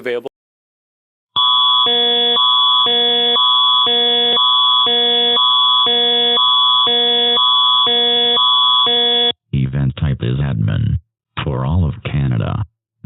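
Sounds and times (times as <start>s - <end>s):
warbling emergency alert tone: 1.4s - 9.4s.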